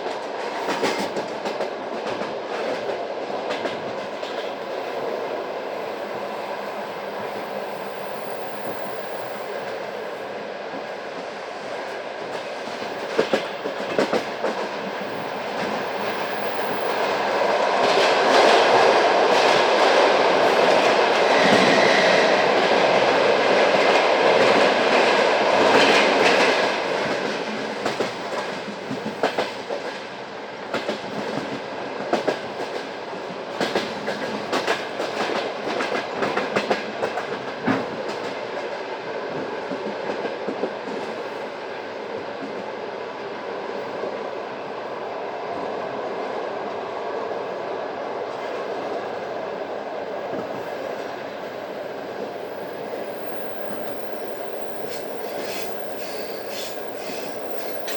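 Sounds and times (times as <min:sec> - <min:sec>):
train wheels on rails: 0:00.0 - 0:57.9
rail joint clicks: 0:10.7 - 0:41.5, 0:48.3 - 0:57.9.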